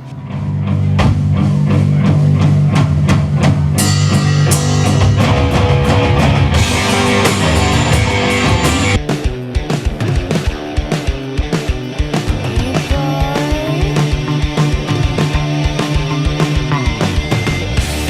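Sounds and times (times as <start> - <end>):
rock music: 0.0 - 18.0
cymbals crashing: 3.8 - 9.0.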